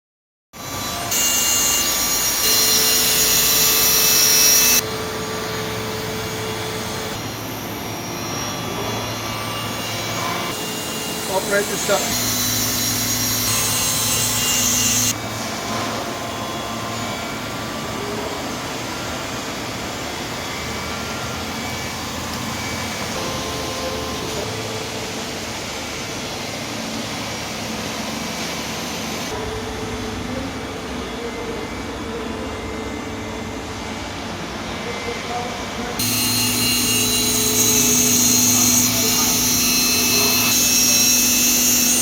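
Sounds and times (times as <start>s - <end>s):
grinding machine hiss and hum: 0.6s - 42.0s.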